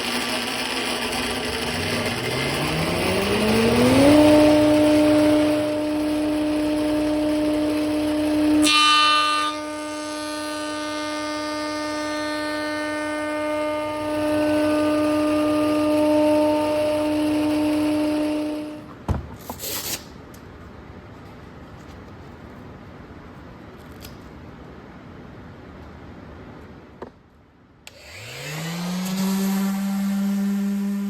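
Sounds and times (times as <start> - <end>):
electric power tool motor: 0.0 - 18.9, 27.9 - 31.0.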